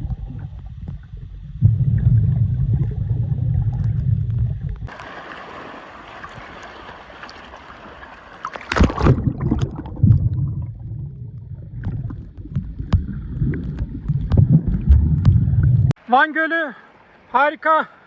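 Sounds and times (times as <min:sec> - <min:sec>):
low rumbling: 0:00.0 - 0:04.9, 0:08.9 - 0:16.0
lake water sloshing: 0:04.8 - 0:15.9
loud splash or knock: 0:08.6 - 0:09.8.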